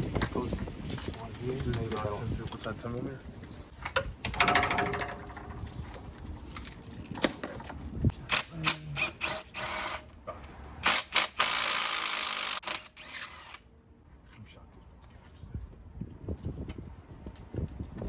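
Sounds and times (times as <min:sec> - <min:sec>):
metal clanks: 0:03.9 - 0:05.7
ratchet clicking: 0:10.8 - 0:13.6.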